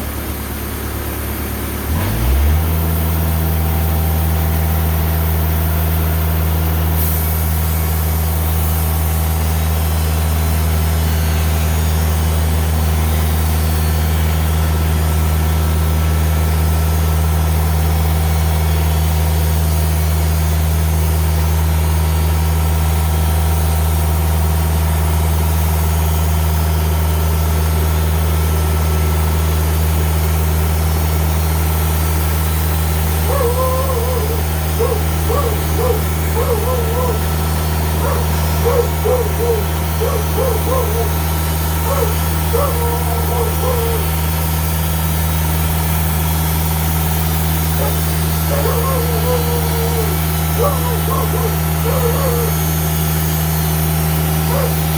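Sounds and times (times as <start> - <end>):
diesel engine idling: 0.0 - 54.9
dog barking: 33.2 - 44.3, 47.7 - 52.8, 54.4 - 54.9.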